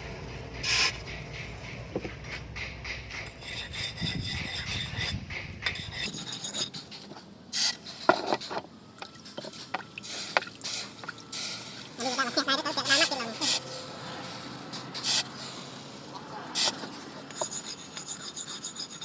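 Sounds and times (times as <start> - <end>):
file scraping on metal: 3.1 - 8.6, 16.6 - 19.0.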